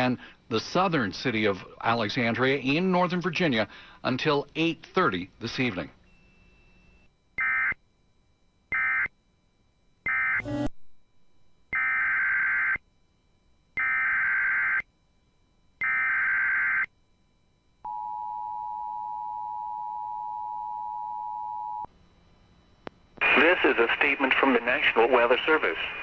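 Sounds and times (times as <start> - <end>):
digital data bursts: 10.1 - 10.8
two-tone attention signal: 10.1 - 11.0.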